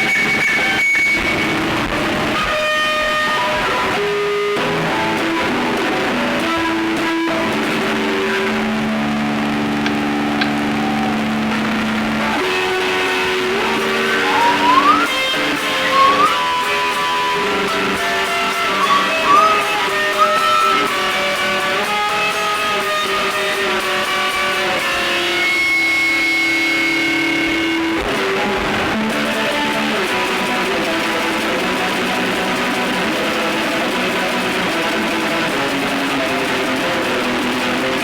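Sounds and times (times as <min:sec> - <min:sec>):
dark ambient drone music: 0:09.7 - 0:22.1
short upward-sliding notes: 0:13.5 - 0:22.0.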